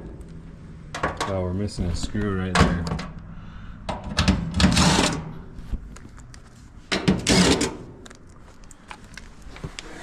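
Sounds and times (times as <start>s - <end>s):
sheet metal scraping: 4.5s - 5.3s.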